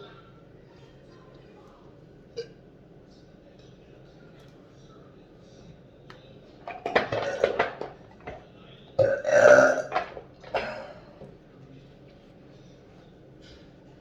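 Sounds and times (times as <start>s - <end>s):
woman burping loudly: 9.0s - 10.9s.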